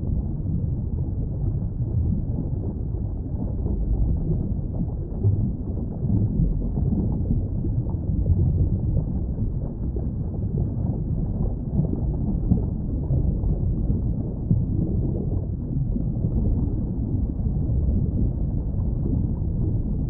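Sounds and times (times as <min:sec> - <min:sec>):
muffled underwater rumble: 0:00.0 - 0:20.0.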